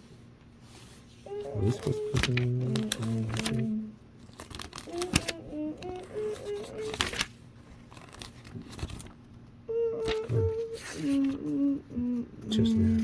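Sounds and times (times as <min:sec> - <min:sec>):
person humming softly: 0:01.3 - 0:04.0, 0:04.9 - 0:07.0, 0:09.7 - 0:13.0
plastic pieces clicking: 0:04.2 - 0:07.3.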